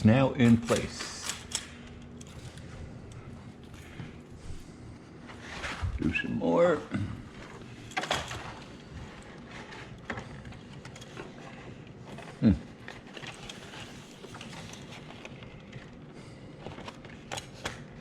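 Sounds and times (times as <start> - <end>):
blind slats rustling and clicking: 0.4 - 4.2, 7.3 - 12.3, 12.9 - 18.0.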